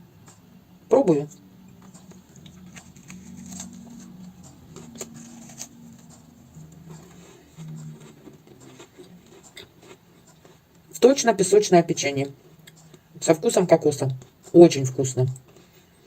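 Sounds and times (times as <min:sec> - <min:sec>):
crunchy chewing: 0:01.6 - 0:11.1.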